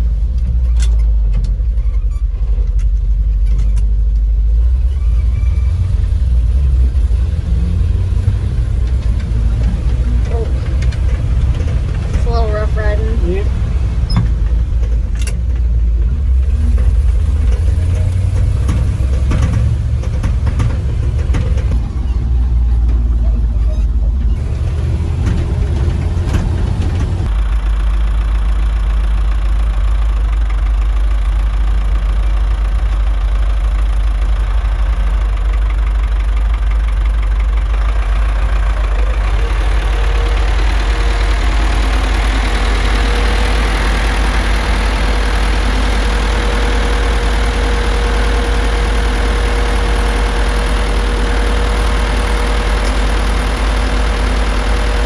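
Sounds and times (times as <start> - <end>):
farm vehicle engine rumbling: 0.0 - 55.0
steady whine: 37.7 - 55.0.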